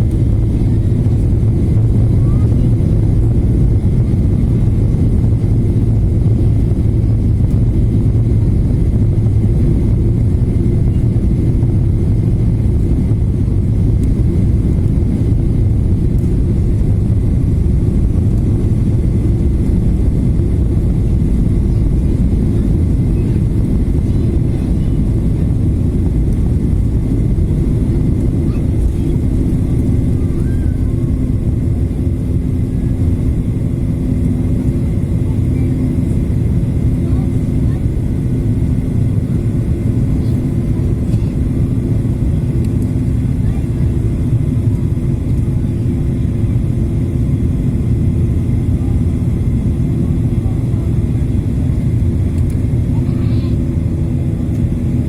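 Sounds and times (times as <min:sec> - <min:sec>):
jet engine cabin rumble: 0:00.0 - 0:55.0
steady low hum: 0:00.0 - 0:55.0.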